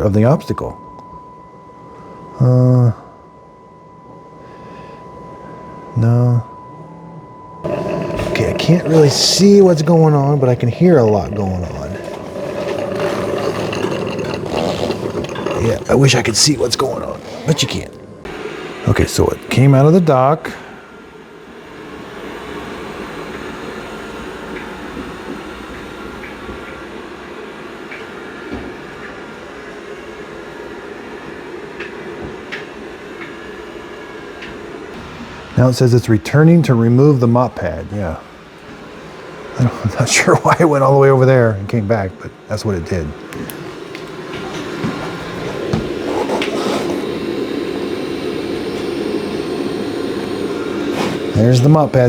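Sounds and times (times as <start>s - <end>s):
robot vacuum running: 7.6s - 20.4s, 43.3s - 52.0s.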